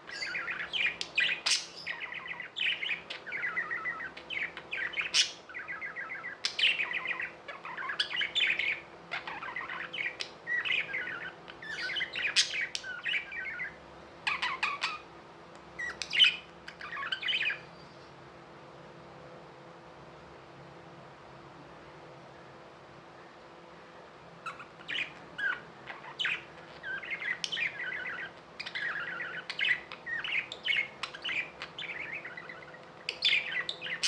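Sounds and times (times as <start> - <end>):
budgerigars chattering and warbling: 0.0 - 15.1, 15.8 - 17.6, 24.4 - 34.0.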